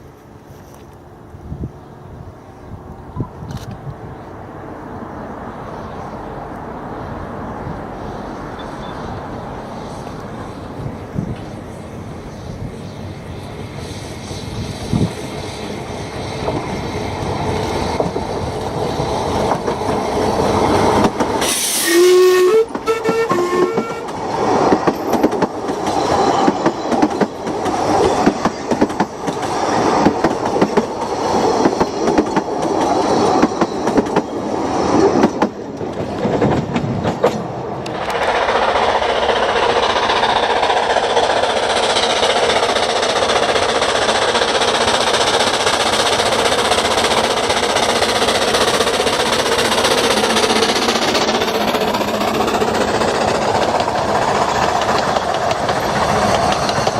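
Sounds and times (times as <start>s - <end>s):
steam train running past: 0.0s - 56.9s
train wheels clattering: 13.8s - 56.9s
train whistle short notes: 21.4s - 24.1s.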